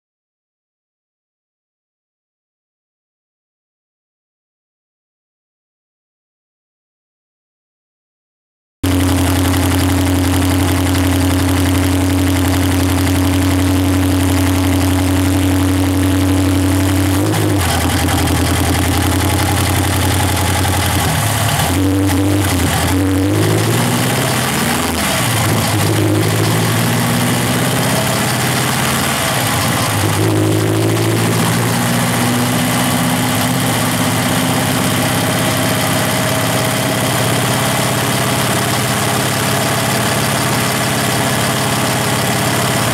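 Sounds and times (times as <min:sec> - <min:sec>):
car engine running and revving: 0:08.8 - 0:42.9.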